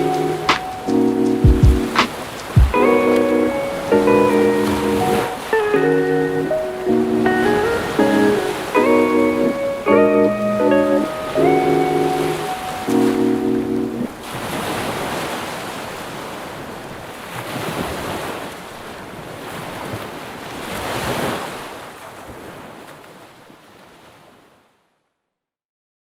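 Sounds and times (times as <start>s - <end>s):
music: 0.0s - 14.1s
sea waves washing onto beach: 0.0s - 24.6s.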